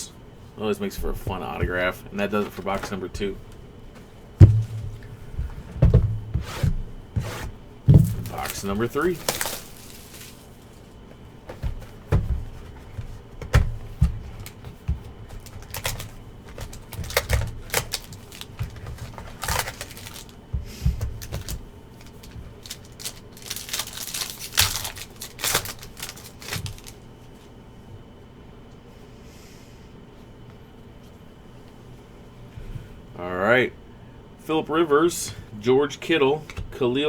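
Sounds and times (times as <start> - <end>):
cardboard and wrapper scraping on table: 6.3 - 10.9, 14.4 - 27.0.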